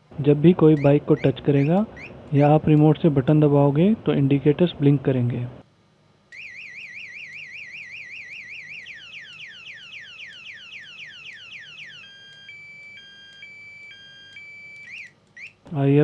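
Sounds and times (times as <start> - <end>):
motorcycle alarm siren: 6.3 - 15.6.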